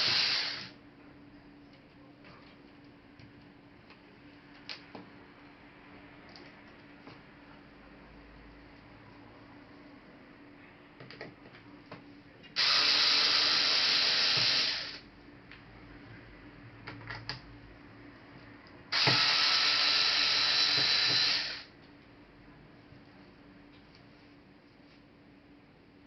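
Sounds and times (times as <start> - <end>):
electric screwdriver running: 0.0 - 0.7, 12.6 - 15.0, 18.9 - 21.7.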